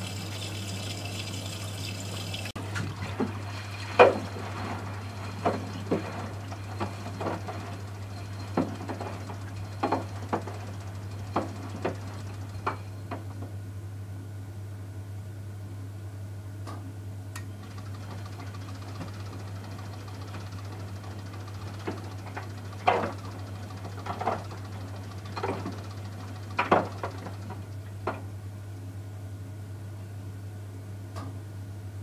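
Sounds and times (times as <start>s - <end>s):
washing machine humming: 0.0s - 13.7s, 17.4s - 29.9s
washing machine knocks and thuds: 5.2s - 12.8s, 21.9s - 28.3s.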